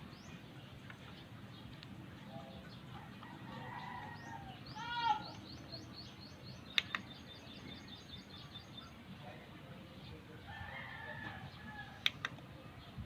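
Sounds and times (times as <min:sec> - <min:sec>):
birds calling: 0:00.0 - 0:13.0
sharp clicks: 0:06.7 - 0:07.3, 0:12.0 - 0:12.5.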